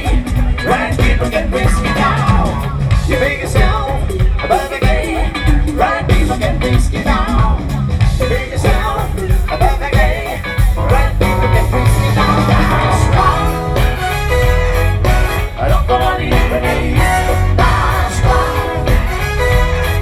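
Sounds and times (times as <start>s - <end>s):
rock music with singing: 0.0s - 20.0s.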